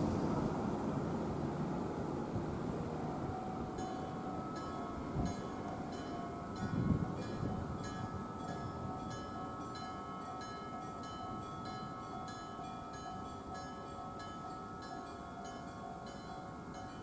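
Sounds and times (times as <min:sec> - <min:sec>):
train wheels rumbling: 0:00.0 - 0:04.3.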